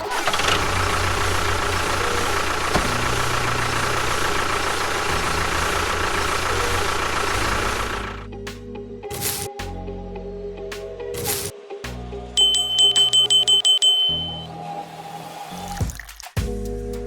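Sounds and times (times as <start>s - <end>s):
small motor running with hiss: 0.1s - 8.2s, 9.2s - 9.5s.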